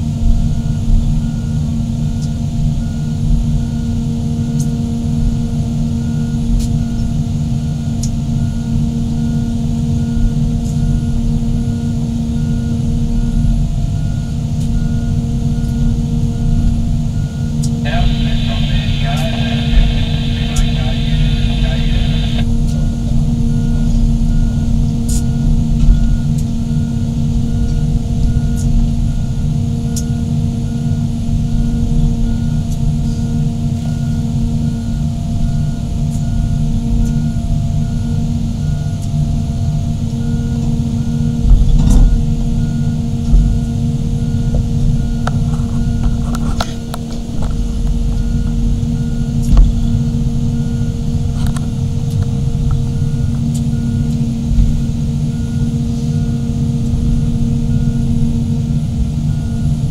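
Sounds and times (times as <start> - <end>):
excavator diesel engines running: 16.6 - 28.3
repeating beeping alarm: 17.8 - 22.4.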